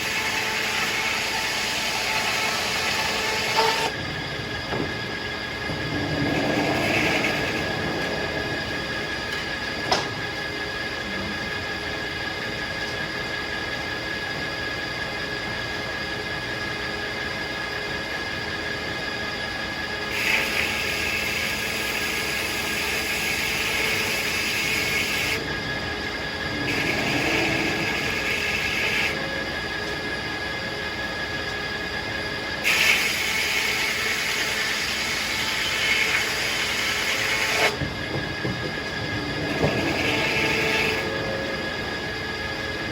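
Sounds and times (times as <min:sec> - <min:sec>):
circular saw blade whining: 0:00.0 - 0:42.9.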